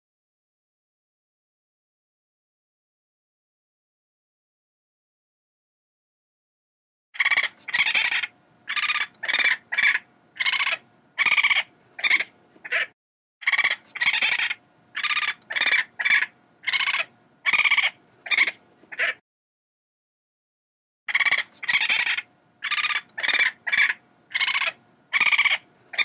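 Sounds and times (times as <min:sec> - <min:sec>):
animal high-pitched calls: 0:07.2 - 0:19.2, 0:21.1 - 0:26.0.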